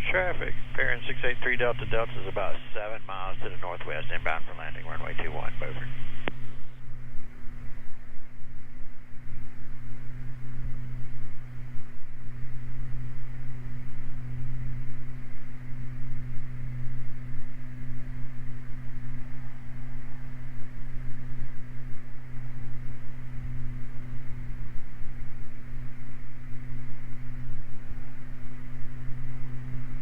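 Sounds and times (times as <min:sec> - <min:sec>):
propeller engines droning: 0:00.0 - 0:30.0.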